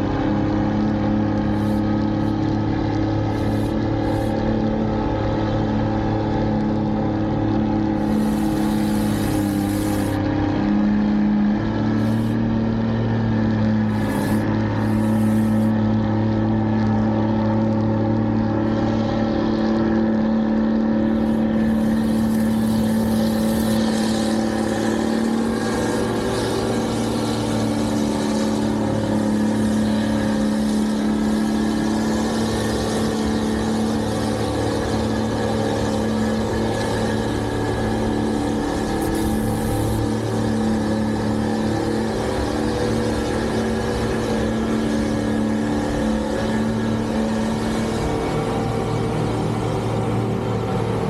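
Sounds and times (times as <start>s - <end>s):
machinery engine humming: 0.0s - 51.0s
hissing rush: 1.4s - 2.5s, 3.1s - 4.5s, 7.9s - 10.3s, 12.0s - 12.4s, 13.8s - 15.8s, 21.0s - 48.7s.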